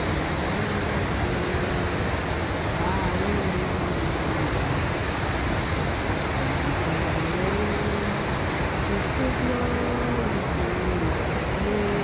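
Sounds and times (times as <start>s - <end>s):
waterfall roar: 0.0s - 12.0s.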